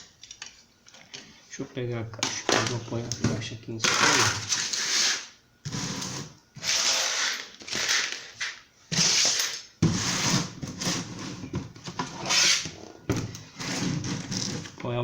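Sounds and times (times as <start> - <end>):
cardboard box rustling and scraping: 13.5 - 14.7.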